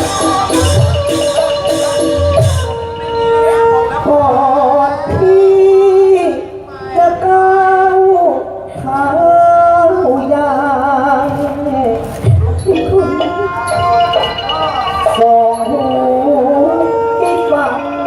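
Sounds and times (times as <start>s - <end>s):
musical accompaniment: 0.0s - 6.7s, 11.3s - 18.0s.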